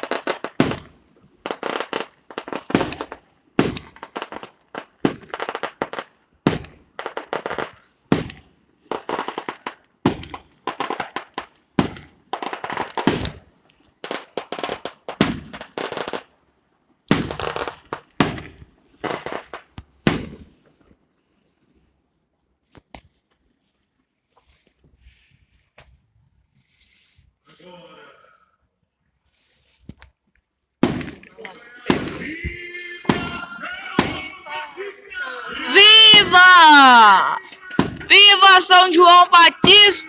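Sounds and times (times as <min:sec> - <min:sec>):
firecrackers crackling: 0:00.0 - 0:07.5, 0:35.7 - 0:40.0.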